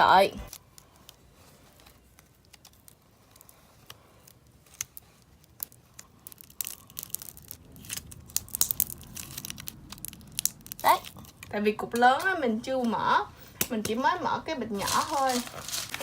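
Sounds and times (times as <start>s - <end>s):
hands handling things on table: 14.8s - 16.0s.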